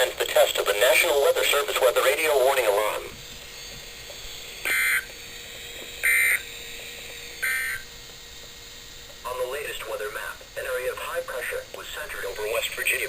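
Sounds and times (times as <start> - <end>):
steady radio hiss: 0.0 - 13.0
digital tone data bursts: 4.6 - 5.1, 6.0 - 6.5, 7.4 - 7.9.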